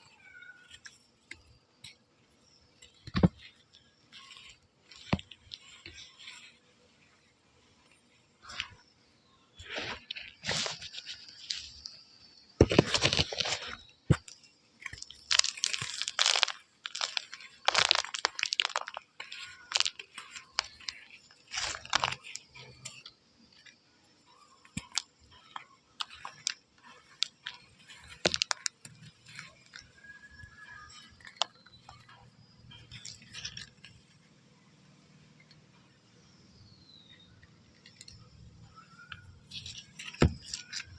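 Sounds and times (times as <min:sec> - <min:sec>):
chalk crunching: 0:00.0 - 0:08.8, 0:09.6 - 0:34.1, 0:37.7 - 0:40.9.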